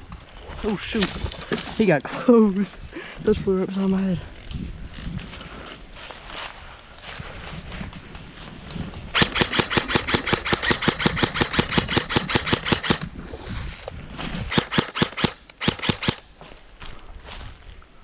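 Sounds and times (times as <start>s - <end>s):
airsoft gun firing full-auto: 9.2s - 13.1s, 14.5s - 16.3s.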